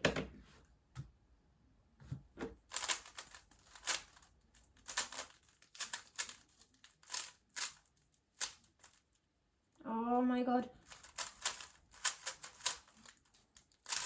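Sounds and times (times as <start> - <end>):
puzzle cube clacking: 2.7 - 4.2, 4.8 - 9.0, 10.8 - 14.0.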